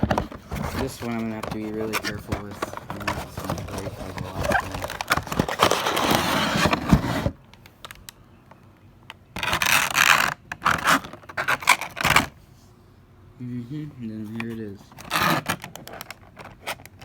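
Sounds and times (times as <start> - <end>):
toy packaging scraping and rustling: 0.0 - 7.4, 9.4 - 12.4, 14.1 - 17.0.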